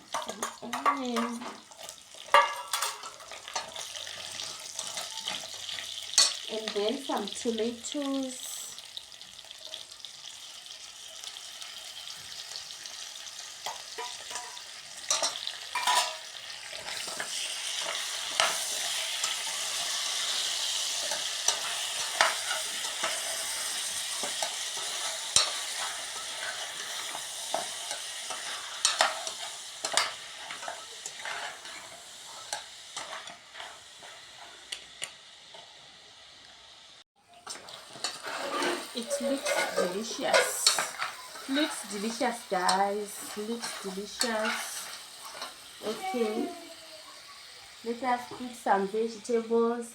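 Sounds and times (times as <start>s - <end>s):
food sizzling in hot oil: 0.0s - 49.9s
utensil scraping a pan: 13.6s - 34.7s, 37.5s - 46.6s.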